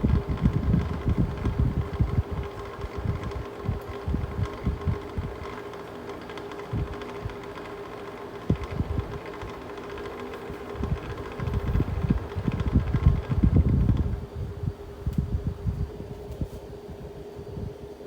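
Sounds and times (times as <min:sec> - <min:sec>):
air gusts buffeting microphone: 0:00.0 - 0:05.6, 0:08.5 - 0:09.4, 0:10.6 - 0:17.9
box fan humming: 0:00.0 - 0:18.0.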